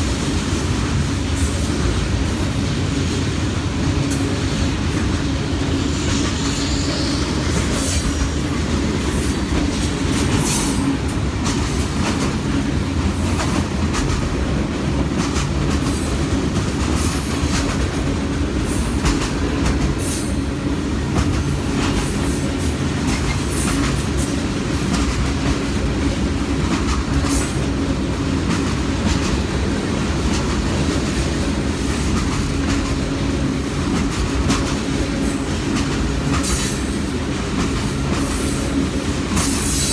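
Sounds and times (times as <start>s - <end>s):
train wheels rumbling on rails: 0.0s - 39.9s
high wheel squeals: 5.7s - 9.4s.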